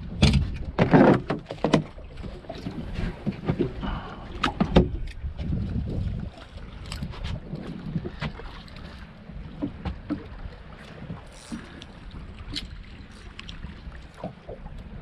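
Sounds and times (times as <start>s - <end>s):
wind rumbling on microphone: 0.0s - 15.0s.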